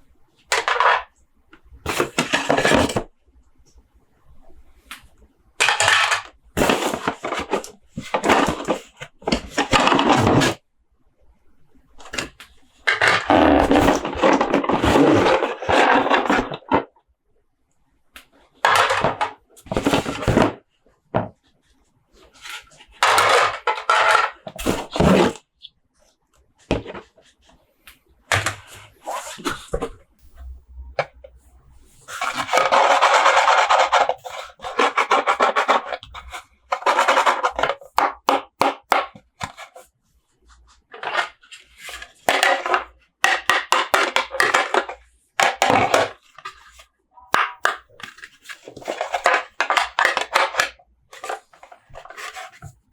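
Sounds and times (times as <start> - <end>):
hands handling plastic packaging: 32.0 - 39.8, 40.9 - 52.9.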